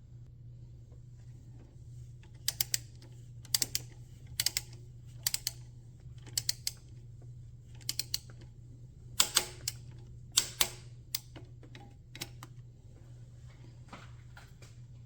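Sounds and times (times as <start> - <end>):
steady low hum: 0.0 - 15.0
ratchet wrench clicking: 2.5 - 2.9, 3.5 - 5.6, 6.3 - 6.8, 7.8 - 8.3.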